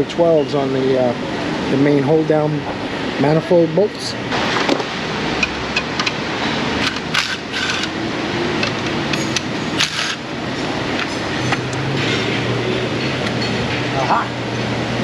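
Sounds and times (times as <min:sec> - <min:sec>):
workshop background noise: 0:00.0 - 0:15.0
metal hand tools clinking: 0:09.1 - 0:10.2.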